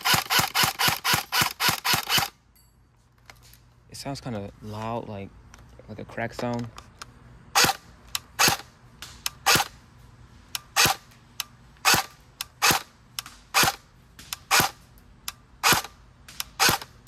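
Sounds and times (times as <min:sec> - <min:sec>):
airsoft gun shots cracking: 0:15.6 - 0:17.0.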